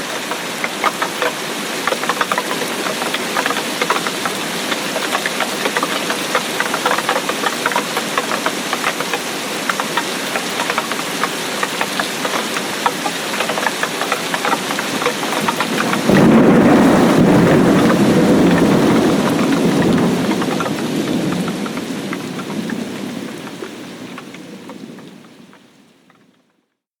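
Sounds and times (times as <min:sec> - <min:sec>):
heavy rain hissing: 0:00.0 - 0:25.8
raindrops ticking on surface: 0:00.0 - 0:26.8
thunder rumbling: 0:13.4 - 0:25.2.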